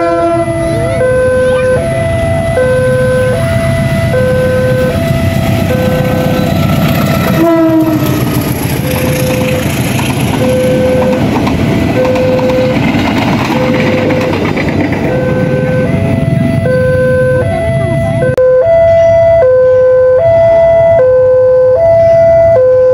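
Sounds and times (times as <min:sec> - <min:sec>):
train horn: 0:00.0 - 0:01.9, 0:04.1 - 0:09.7
train rumbling past: 0:00.0 - 0:18.4
two-tone crossing warning alarm: 0:00.0 - 0:22.9.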